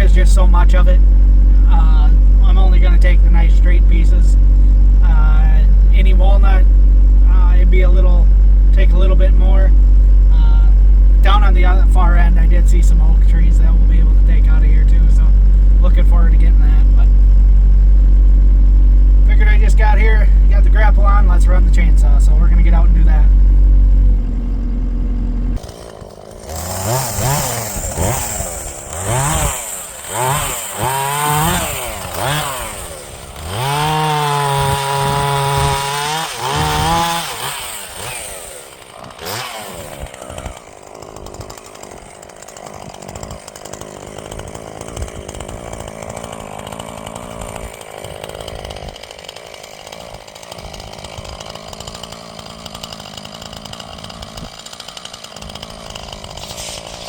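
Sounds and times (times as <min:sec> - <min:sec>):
low engine drone: 0:00.0 - 0:39.2
chainsaw revving: 0:00.0 - 0:57.0.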